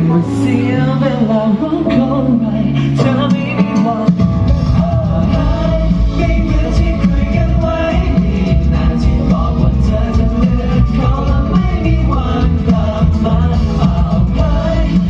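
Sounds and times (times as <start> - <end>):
person singing with band: 0.0 - 15.0
heavy bass and drums: 3.2 - 15.0.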